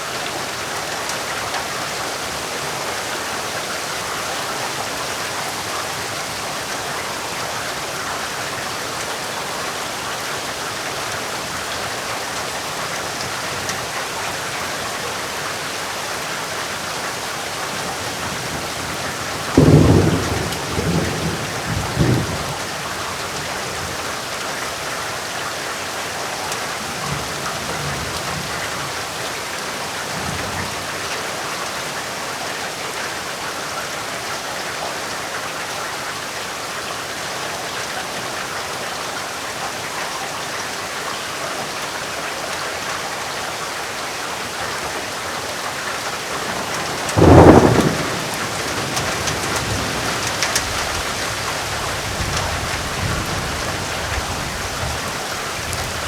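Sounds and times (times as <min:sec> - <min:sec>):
heavy rain falling: 0:00.0 - 0:56.0
low thunder rumbling: 0:18.0 - 0:22.8, 0:46.4 - 0:56.0
loud thunderclap: 0:19.4 - 0:22.6, 0:46.5 - 0:55.0.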